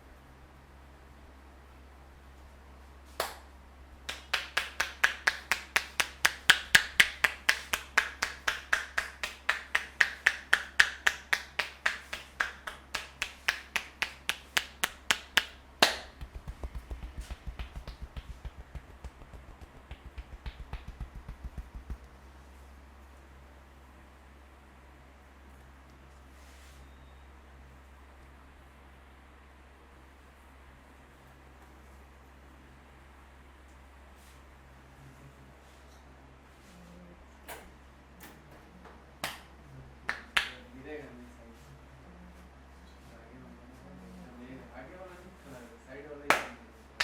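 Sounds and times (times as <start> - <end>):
hands clapping on a head: 3.2 - 3.5, 4.1 - 22.1, 39.2 - 39.5, 40.1 - 40.6, 46.3 - 46.6
light quick pats: 4.1 - 22.2.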